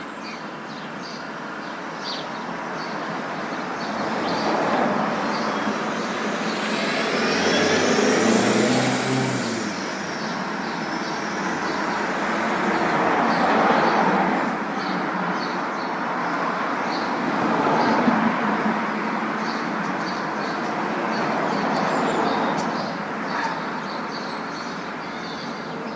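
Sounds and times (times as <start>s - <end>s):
roar of street traffic: 1.7s - 24.8s
passing vehicle high whine: 2.4s - 14.8s.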